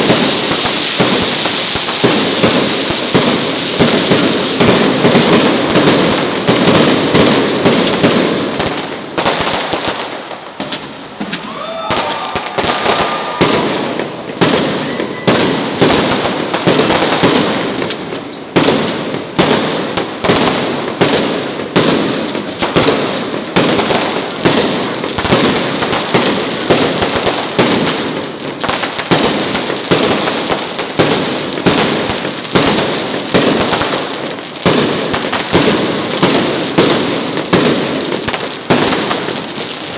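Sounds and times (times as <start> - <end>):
fireworks bangs and crackles: 0.0 - 39.9
rising firework whistle: 10.7 - 17.4.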